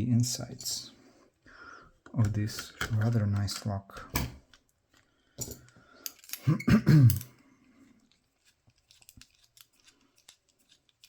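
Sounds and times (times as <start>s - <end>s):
person clearing throat: 6.4s - 7.3s.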